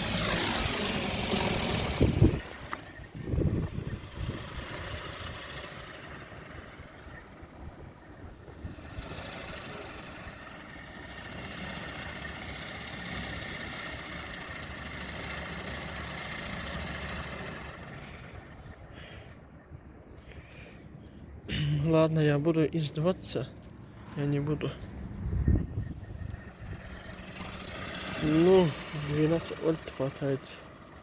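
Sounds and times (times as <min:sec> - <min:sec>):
gusty wind on microphone: 0:00.0 - 0:05.5, 0:07.7 - 0:10.0, 0:25.0 - 0:27.6.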